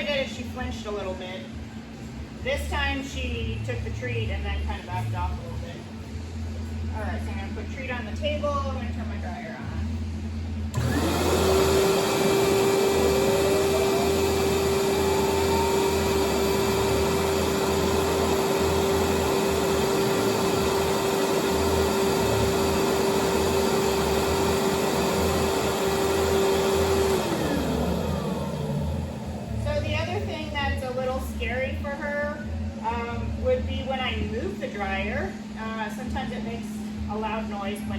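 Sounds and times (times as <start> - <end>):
blow dryer motor whining: 10.6 - 37.7.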